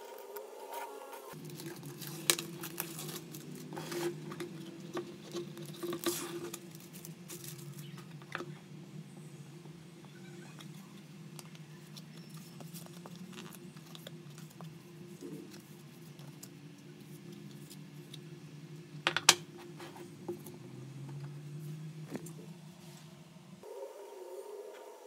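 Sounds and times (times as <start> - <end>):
handling noises and clicks: 0.0 - 8.6.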